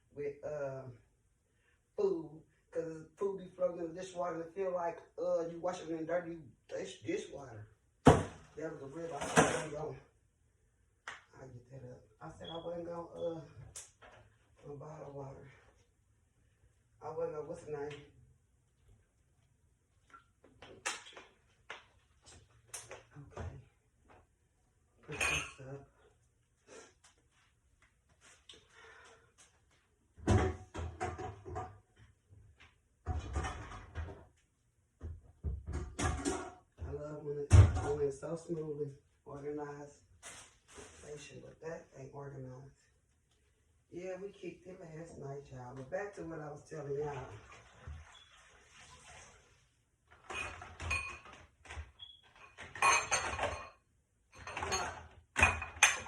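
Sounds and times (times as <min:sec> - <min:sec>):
items clattering: 0:08.1 - 0:09.8, 0:50.1 - 0:53.8, 0:54.4 - 0:56.0.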